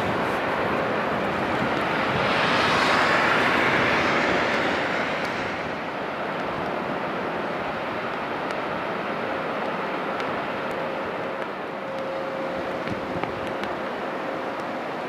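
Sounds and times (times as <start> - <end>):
wind: 0.0 - 15.0
vehicle passing by: 1.1 - 6.1
water: 5.9 - 15.0.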